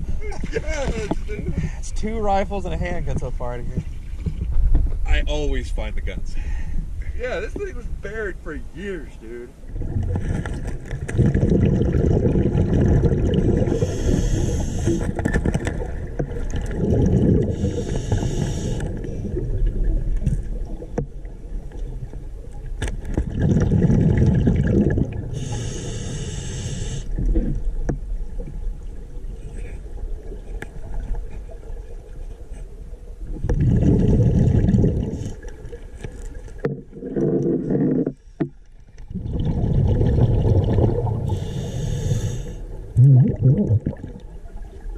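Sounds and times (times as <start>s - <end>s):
gurgling exhaled bubbles: 9.6s - 22.6s, 23.2s - 25.8s, 33.2s - 38.2s, 39.0s - 44.9s
regulator hiss on inhale: 13.7s - 15.2s, 17.5s - 19.1s, 25.3s - 27.2s, 41.3s - 42.7s.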